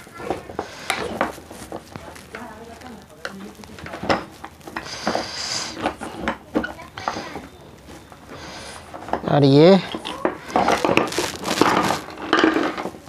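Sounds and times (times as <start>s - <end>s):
rasping scrape: 3.8s - 6.4s.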